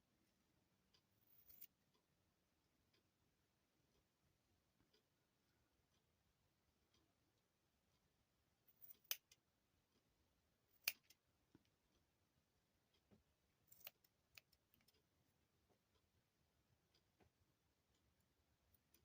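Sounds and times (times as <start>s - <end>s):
scissors snipping yarn: 8.7s - 9.4s, 10.7s - 11.7s, 13.6s - 15.0s.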